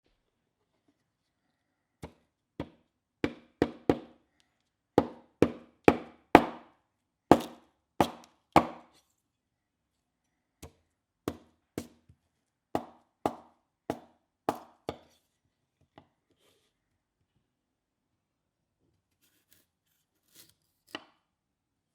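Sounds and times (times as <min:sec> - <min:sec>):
knife chopping on a cutting board: 0:02.0 - 0:04.1, 0:05.0 - 0:06.7, 0:07.3 - 0:08.9, 0:10.6 - 0:12.0, 0:12.8 - 0:15.2.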